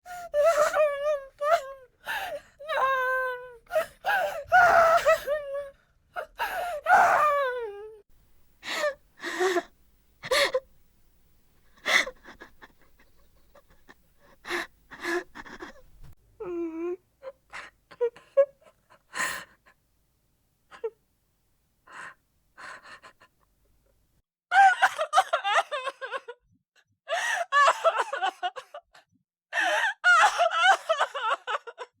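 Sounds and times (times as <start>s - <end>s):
woman crying and sobbing: 0.0s - 8.0s, 8.6s - 10.7s, 11.6s - 19.8s, 24.5s - 26.4s, 27.1s - 29.0s, 29.6s - 31.9s.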